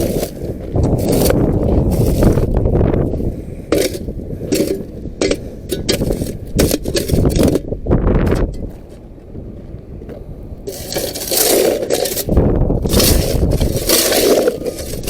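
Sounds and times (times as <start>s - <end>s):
shovel scraping dry dirt: 0.0s - 7.7s, 10.7s - 15.0s
wind rumble on microphone: 0.0s - 15.0s.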